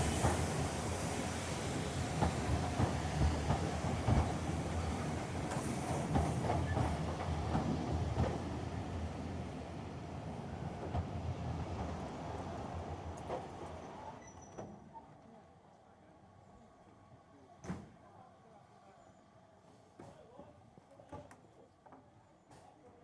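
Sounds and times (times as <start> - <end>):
train wheels clattering on rails: 0.0 - 8.6.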